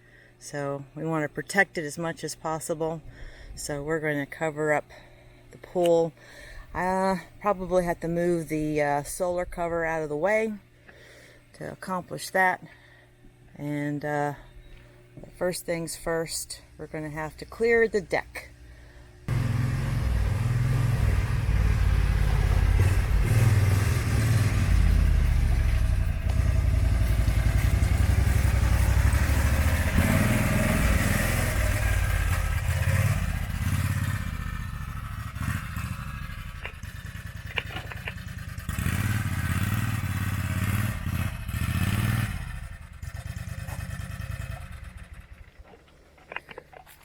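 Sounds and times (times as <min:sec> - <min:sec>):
small engine running: 0:18.7 - 0:45.9.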